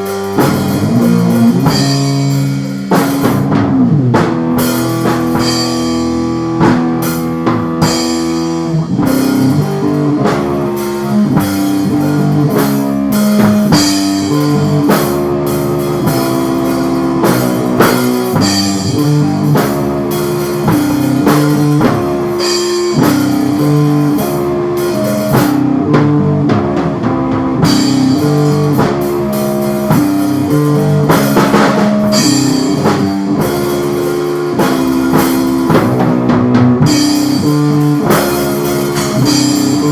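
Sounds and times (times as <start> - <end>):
bass guitar: 0.0 - 39.9
drum kit beat: 0.0 - 39.9
electric guitar chords: 0.0 - 39.9.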